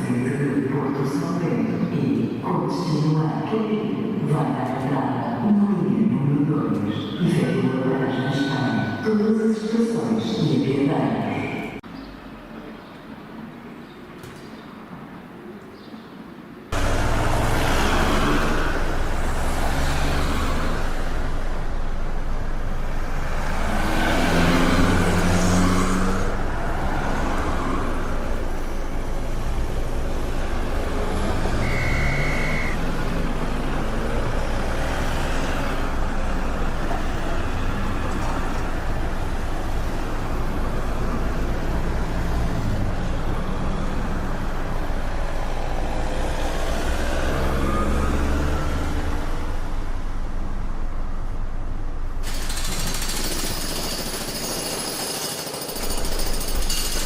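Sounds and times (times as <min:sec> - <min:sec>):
vehicles passing: 0:11.6 - 0:54.6
short high beep: 0:31.5 - 0:32.8.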